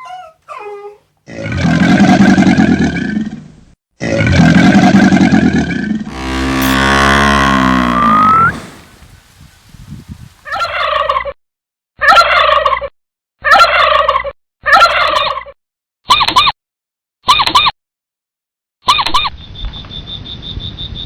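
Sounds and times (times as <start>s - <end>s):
poultry warbling calls: 6.1s - 9.2s.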